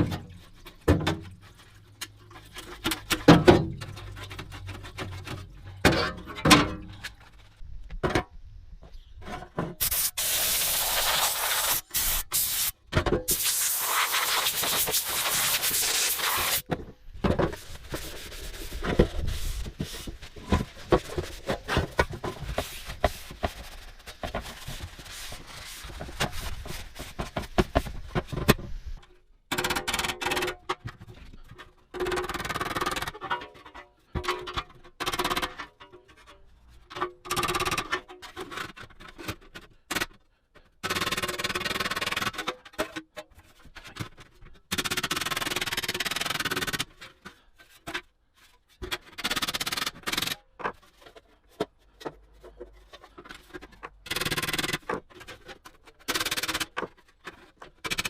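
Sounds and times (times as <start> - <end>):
scraping and rubbing on metal: 9.4 - 12.7, 13.3 - 16.7, 17.5 - 28.9
hissing bursts: 9.8 - 16.6.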